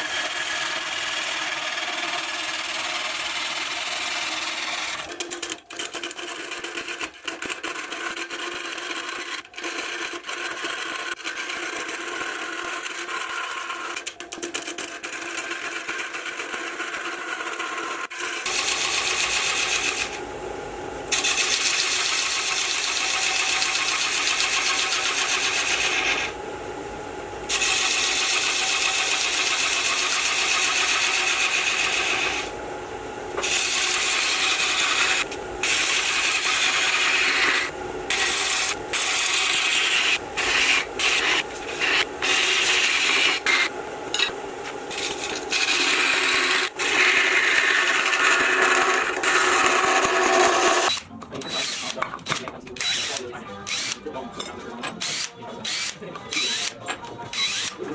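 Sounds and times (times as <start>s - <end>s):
lathe humming: 0.0s - 5.1s, 17.4s - 57.9s
tool rasping on spinning wood: 14.6s - 20.2s, 21.1s - 26.4s, 27.5s - 32.5s, 33.4s - 54.1s, 54.7s - 57.9s.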